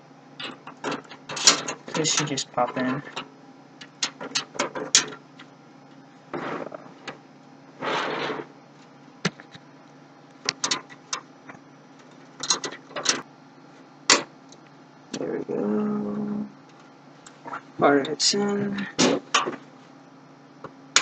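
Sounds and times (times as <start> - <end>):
sheet metal clicks and snaps: 0.4 - 2.3, 10.5 - 11.2, 12.4 - 13.2.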